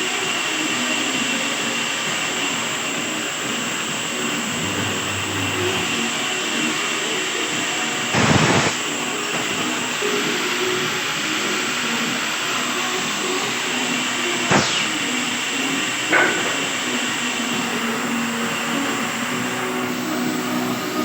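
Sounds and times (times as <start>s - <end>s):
woodworking machinery whooshing hiss: 0.0s - 21.0s.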